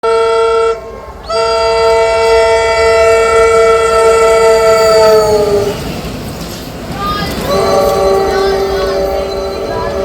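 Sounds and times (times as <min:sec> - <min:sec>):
train horn blast: 0:00.0 - 0:05.8, 0:07.4 - 0:10.0.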